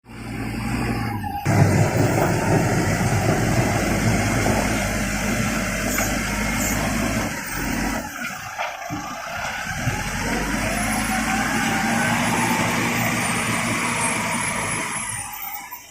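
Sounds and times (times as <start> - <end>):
vehicle engine running: 0.0 - 8.1.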